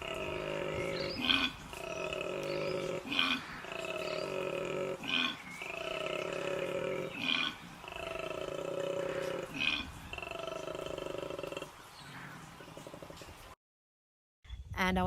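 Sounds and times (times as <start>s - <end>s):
koala grunts: 0.0s - 11.8s.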